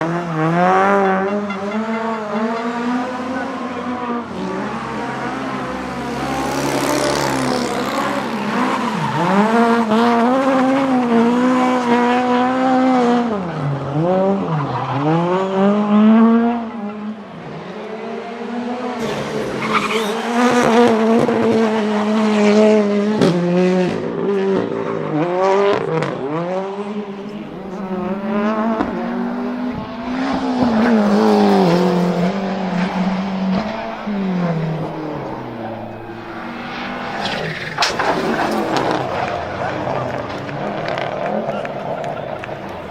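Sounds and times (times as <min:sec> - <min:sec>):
rally car engines revving: 0:00.0 - 0:42.9
tyre noise: 0:05.6 - 0:10.6, 0:27.0 - 0:42.9.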